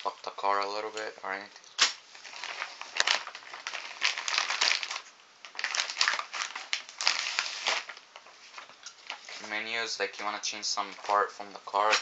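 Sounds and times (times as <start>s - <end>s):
packaging rustling and crinkling: 1.8s - 9.7s.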